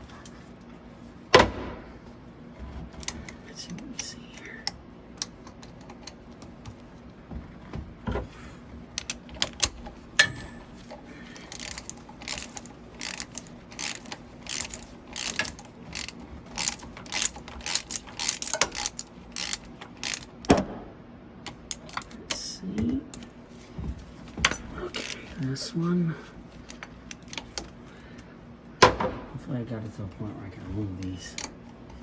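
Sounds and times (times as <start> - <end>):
ratchet wrench clicking: 11.5 - 20.3.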